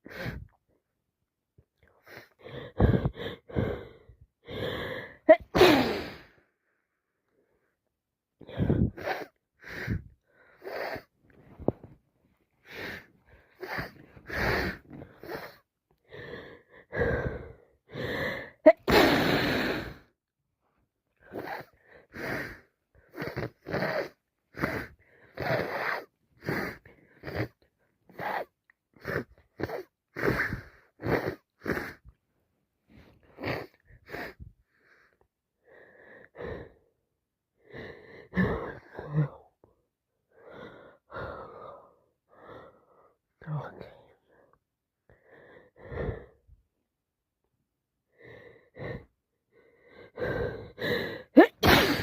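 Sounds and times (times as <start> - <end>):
loud sneeze: 5.3 - 6.2, 18.7 - 19.6, 28.1 - 28.5, 51.4 - 52.0
person sniffing: 5.3 - 6.3, 51.4 - 52.0.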